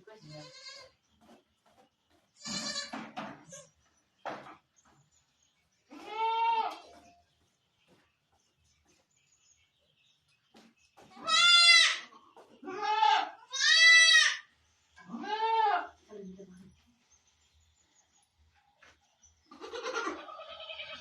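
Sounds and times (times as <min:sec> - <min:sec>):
goat bleating: 0:00.2 - 0:01.0, 0:02.4 - 0:02.9, 0:05.9 - 0:06.8, 0:11.2 - 0:14.4, 0:15.0 - 0:15.9, 0:19.5 - 0:21.0.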